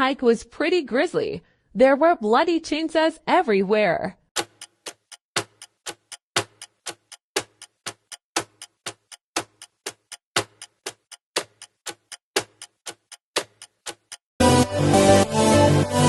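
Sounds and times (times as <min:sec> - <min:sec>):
clock ticking: 0:04.4 - 0:14.2.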